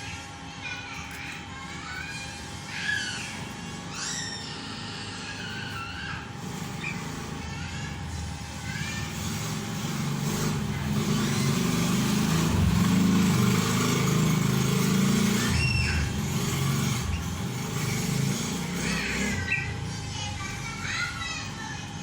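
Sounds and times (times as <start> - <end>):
bird chirps: 19.2 - 19.8.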